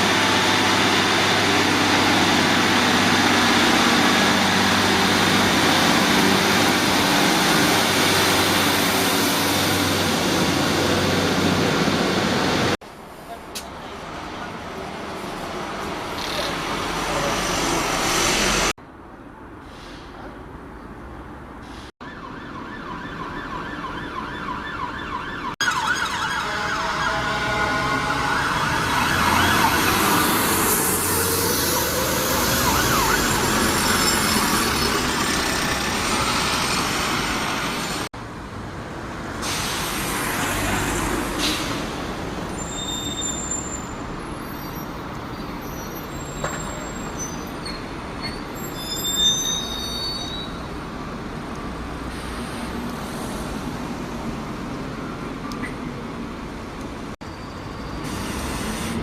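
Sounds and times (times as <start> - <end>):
train passing with whining motor: 0.0 - 12.8, 26.3 - 38.1
short high-pitched squeals: 42.5 - 44.0, 44.6 - 50.7.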